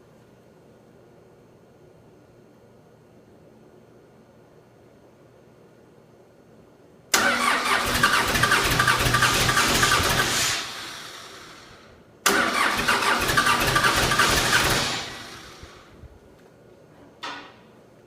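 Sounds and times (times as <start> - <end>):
diesel engine starter cranking: 7.2 - 15.9.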